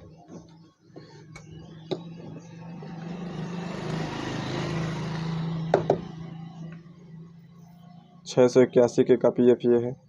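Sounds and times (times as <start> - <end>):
vehicle passing: 1.7 - 9.1.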